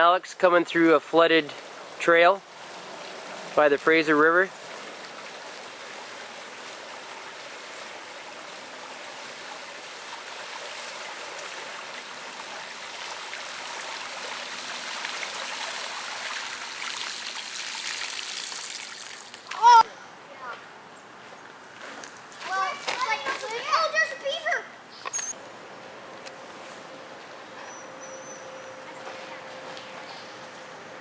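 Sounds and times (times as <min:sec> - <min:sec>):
rushing floodwater: 0:00.0 - 0:19.8.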